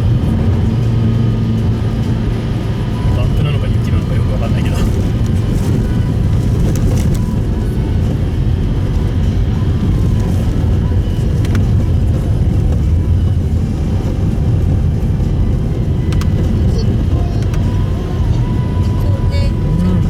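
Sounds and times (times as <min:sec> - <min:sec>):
road and tyre rumble: 0:00.0 - 0:20.0.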